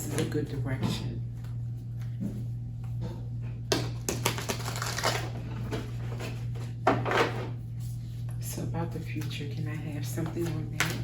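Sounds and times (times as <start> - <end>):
steady low hum: 0.0 - 11.0
cards being shuffled: 4.2 - 5.4.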